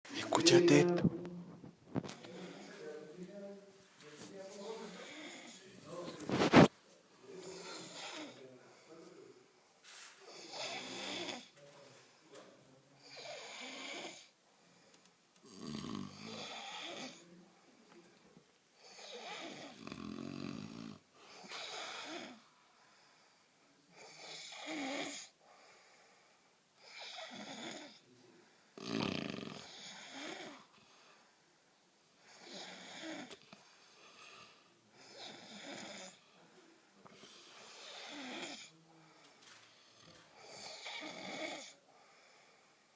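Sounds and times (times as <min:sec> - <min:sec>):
person snoring: 0:10.3 - 0:11.5, 0:15.5 - 0:17.2, 0:28.8 - 0:30.7, 0:34.2 - 0:36.2, 0:37.2 - 0:38.8, 0:40.0 - 0:41.8.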